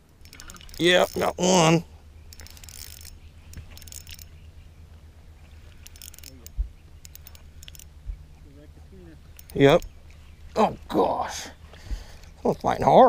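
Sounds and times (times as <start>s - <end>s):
fishing reel clicks and rattles: 0.0s - 4.4s, 5.6s - 8.0s, 9.3s - 10.1s, 12.1s - 13.0s
steady low hum: 0.0s - 13.0s.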